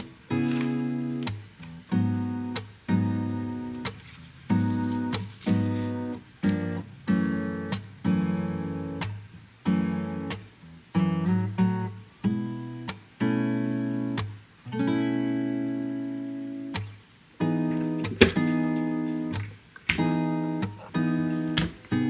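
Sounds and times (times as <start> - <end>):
acoustic guitar chords: 0.0 - 22.0.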